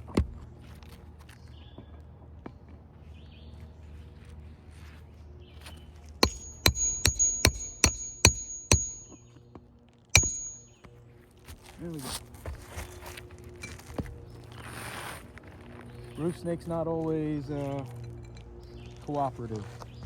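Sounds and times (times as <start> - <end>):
hammer striking metal tool: 6.2 - 9.2, 10.2 - 10.8.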